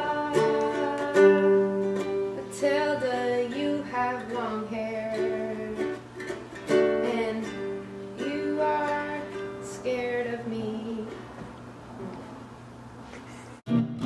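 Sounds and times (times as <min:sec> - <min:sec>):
strummed string instrument chords: 0:13.7 - 0:14.0.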